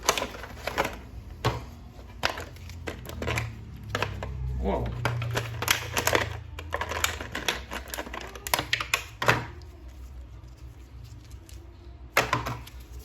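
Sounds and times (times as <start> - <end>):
hard plastic toy clicking: 2.2 - 9.6.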